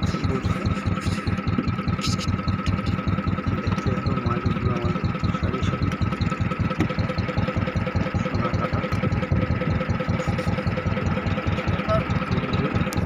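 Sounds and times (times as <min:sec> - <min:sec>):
small engine chugging: 0:00.0 - 0:13.0.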